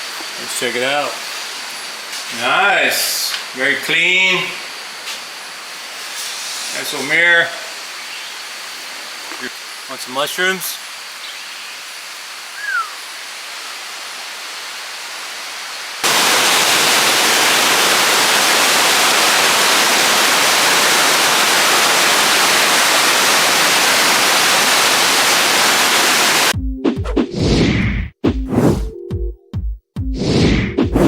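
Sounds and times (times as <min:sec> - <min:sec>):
water hissing: 0:00.0 - 0:26.5
waterfall rushing: 0:06.7 - 0:26.5
falling chirp: 0:12.6 - 0:13.1.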